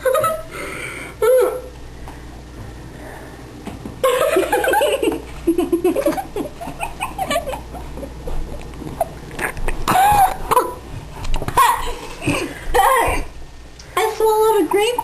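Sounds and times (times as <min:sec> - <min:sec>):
child laughing and vocalizing: 0:01.2 - 0:01.7, 0:08.8 - 0:10.8.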